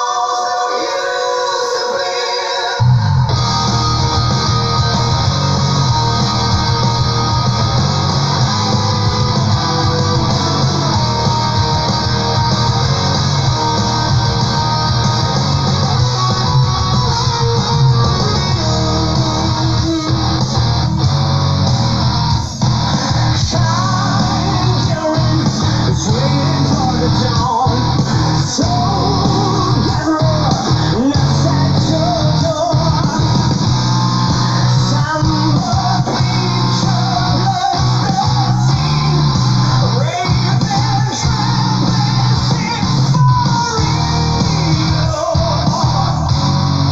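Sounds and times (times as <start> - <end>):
progressive metal music: 2.9 - 46.9.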